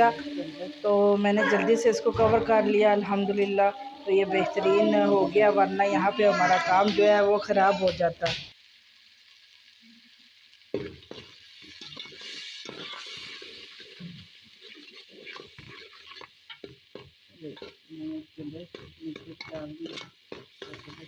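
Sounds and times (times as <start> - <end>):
onions sizzling in hot oil: 0.0 - 21.0
spoon scraping a pot: 11.7 - 14.0, 14.6 - 17.9, 18.7 - 21.0.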